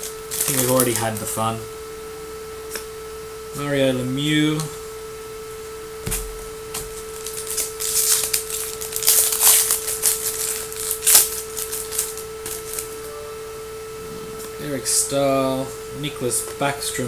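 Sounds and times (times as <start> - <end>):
foil wrapper crinkling: 0.0 - 1.4, 6.1 - 13.2
electrical hum: 0.0 - 17.0
soft thump: 6.0 - 7.0.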